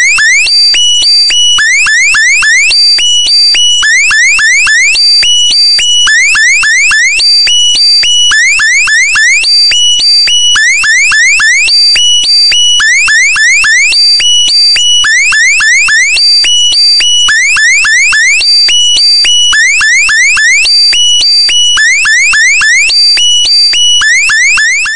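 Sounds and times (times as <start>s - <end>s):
rising electronic alarm chirps: 0.0s - 18.5s
steady alarm beeps: 0.0s - 24.9s.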